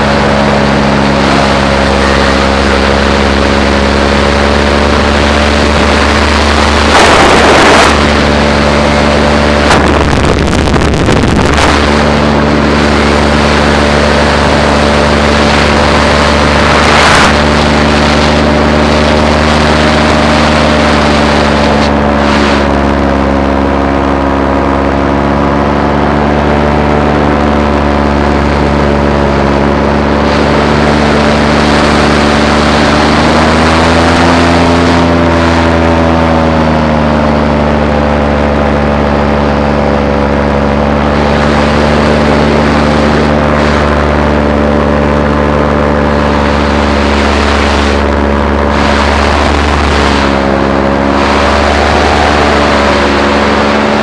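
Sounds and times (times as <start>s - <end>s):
bursts of rushing noise: 0.0s - 23.4s, 46.0s - 54.0s
paramotor engine running: 0.0s - 54.0s.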